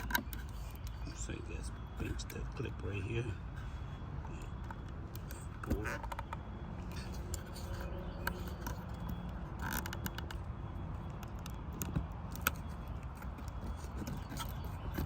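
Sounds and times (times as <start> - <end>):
plastic connector clicks and rattles: 8.2 - 15.0.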